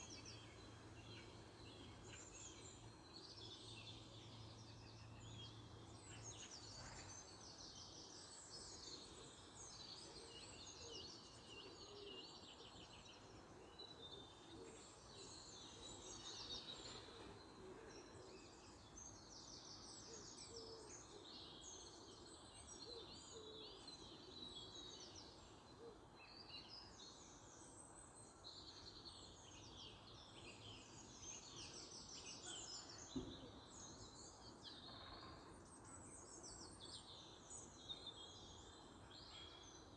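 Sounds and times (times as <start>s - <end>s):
brief knock: 33.1s - 33.5s.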